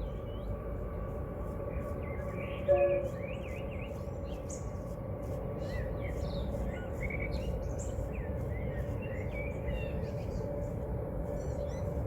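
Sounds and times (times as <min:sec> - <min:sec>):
low background hum: 0:00.0 - 0:12.0.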